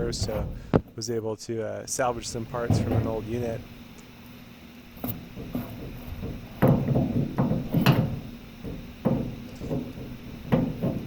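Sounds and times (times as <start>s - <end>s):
knocks of hard objects handled: 5.0s - 11.0s.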